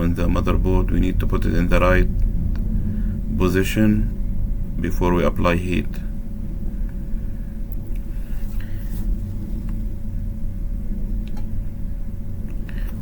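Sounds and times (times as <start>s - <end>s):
bench equipment rumbling and humming: 0.0s - 13.0s
faint constant tone: 0.0s - 13.0s.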